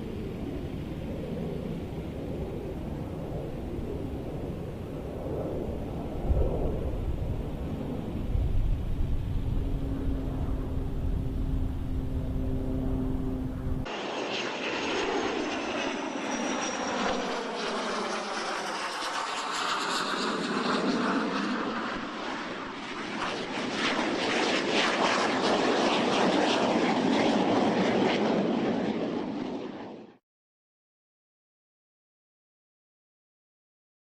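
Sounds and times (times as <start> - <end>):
jet aircraft passing: 0.0 - 30.2
low rumble with hum: 6.2 - 13.9.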